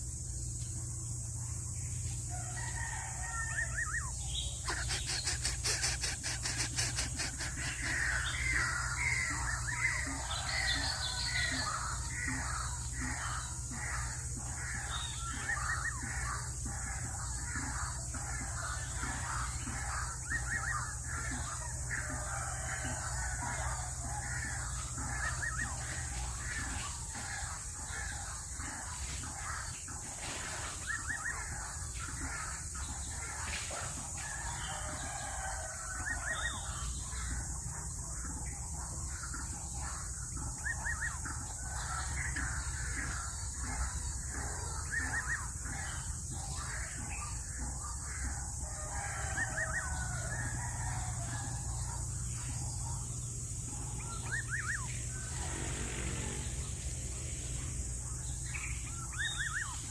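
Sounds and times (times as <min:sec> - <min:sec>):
steady high hiss: 0:00.0 - 0:46.2
bird calls with rising notes: 0:00.8 - 0:59.9.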